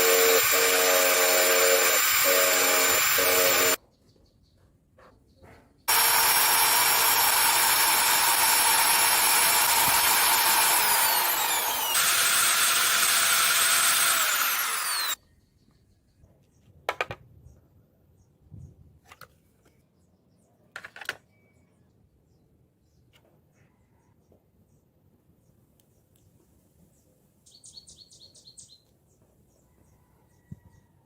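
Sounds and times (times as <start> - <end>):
small electric motor whining: 0.0 - 3.8, 5.9 - 15.2.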